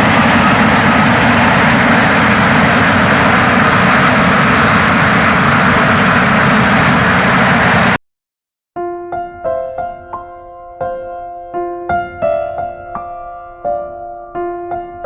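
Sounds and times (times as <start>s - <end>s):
jet engines running: 0.0s - 8.0s
soft piano music: 8.8s - 15.0s.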